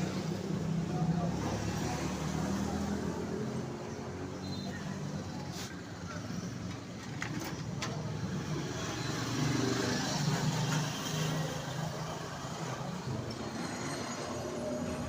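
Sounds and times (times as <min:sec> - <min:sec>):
road traffic noise: 0:00.0 - 0:15.0.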